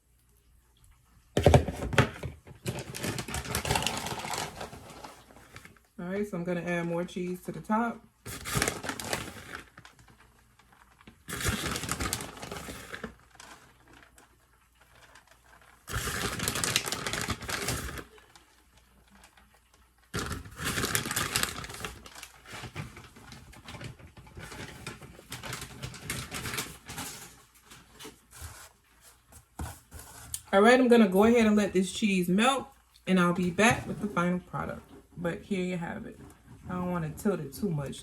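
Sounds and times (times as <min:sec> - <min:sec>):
cheese crinkly rustling: 0:01.5 - 0:05.9, 0:07.1 - 0:30.5.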